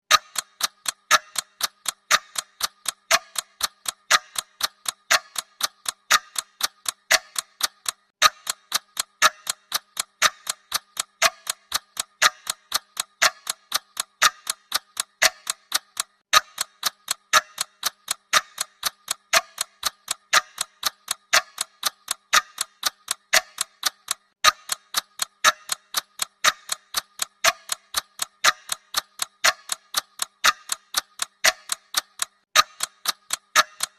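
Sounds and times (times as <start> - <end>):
clock ticking: 0.0 - 33.9.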